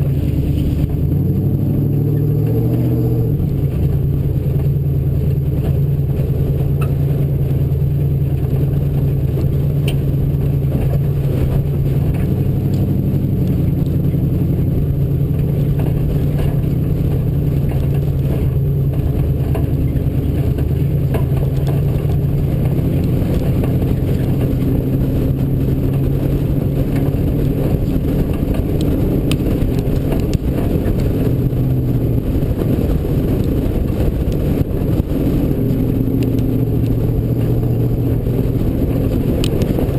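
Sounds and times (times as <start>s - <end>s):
engine running at mid revs: 0.0s - 39.9s.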